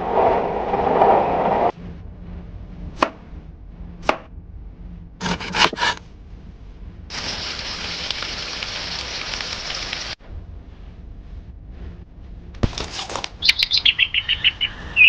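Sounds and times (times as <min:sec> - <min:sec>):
frying sizzle: 0:07.1 - 0:10.2.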